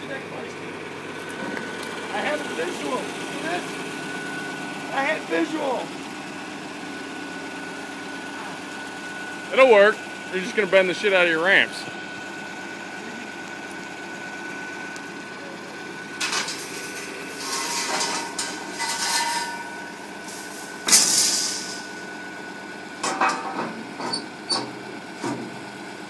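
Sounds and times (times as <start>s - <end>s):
excavator engine whining: 0.0s - 26.0s
metal clanks: 16.2s - 22.0s, 23.0s - 25.5s.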